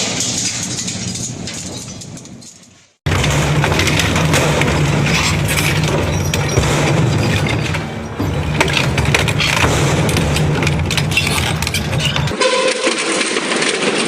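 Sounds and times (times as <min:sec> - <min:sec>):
material clattering in crusher: 0:00.0 - 0:14.0
hammer crusher low drone: 0:03.1 - 0:12.4.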